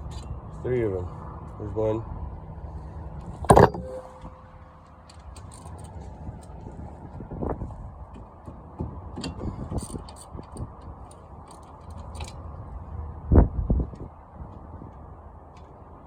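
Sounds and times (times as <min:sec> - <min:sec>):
small metal knocks: 0:03.4 - 0:04.5
heavy metal clunk: 0:03.5 - 0:04.5.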